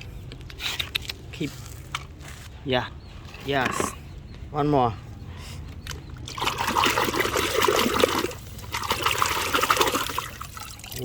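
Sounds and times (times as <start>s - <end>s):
water trickling and splashing: 5.9s - 11.0s.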